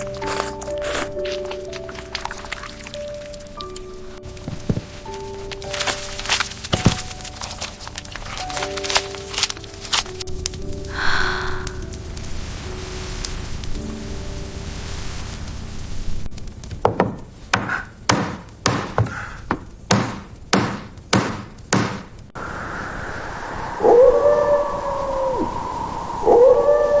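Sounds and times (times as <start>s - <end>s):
dog howling: 23.1s - 27.0s.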